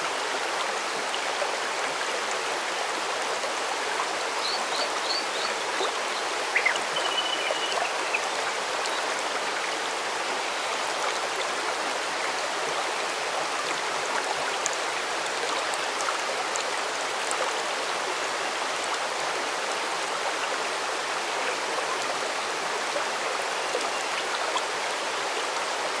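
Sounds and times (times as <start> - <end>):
stream rushing: 0.0 - 26.0
faint high chirps: 6.5 - 8.2
bird calling: 6.5 - 8.3.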